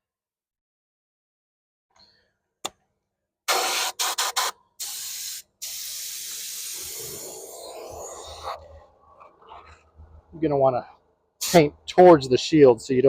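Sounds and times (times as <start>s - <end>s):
paint spraying hiss: 3.5s - 8.6s, 11.4s - 11.6s.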